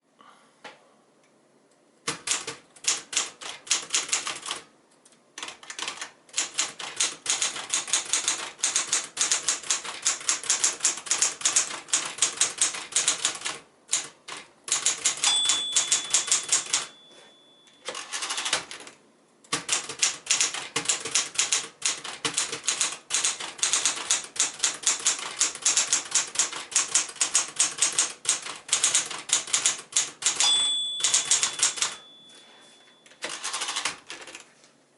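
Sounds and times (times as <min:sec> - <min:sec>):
typewriter keystrokes: 0:02.0 - 0:04.7, 0:05.4 - 0:17.0, 0:17.8 - 0:32.1, 0:33.0 - 0:34.5
typewriter carriage return: 0:05.4 - 0:34.5
typewriter margin bell ringing: 0:14.8 - 0:18.6, 0:30.2 - 0:33.9.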